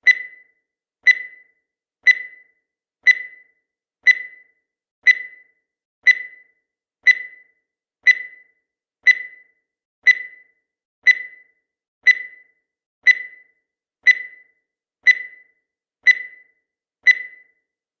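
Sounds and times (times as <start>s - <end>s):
short clear timer beeps: 0.0s - 0.5s, 17.1s - 17.6s.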